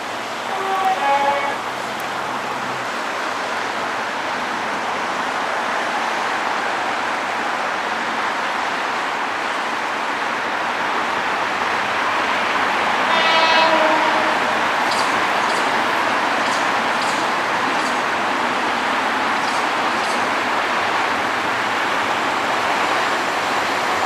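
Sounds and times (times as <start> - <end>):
short horn-like tone: 0.5 - 1.6, 13.1 - 14.4
train rushing past: 11.2 - 24.0.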